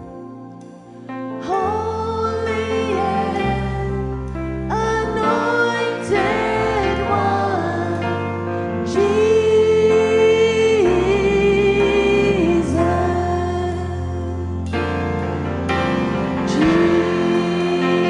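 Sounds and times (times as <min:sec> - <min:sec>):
band accompaniment with bass: 0:03.2 - 0:18.0
person singing long notes: 0:16.5 - 0:18.0.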